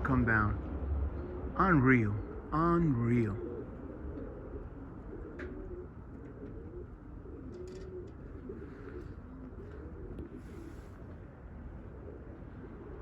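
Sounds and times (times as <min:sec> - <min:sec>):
steady low rumble: 0:00.0 - 0:03.4
pigeons cooing: 0:01.0 - 0:13.0.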